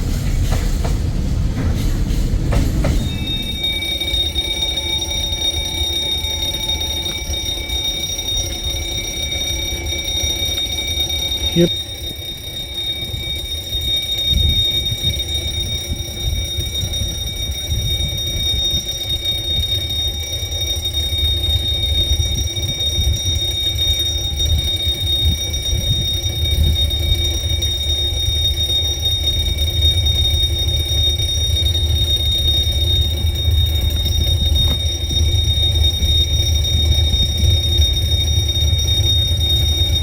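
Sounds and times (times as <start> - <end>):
freight train rumbling past: 0.0 - 40.0
high-pitched squeal: 3.0 - 10.1.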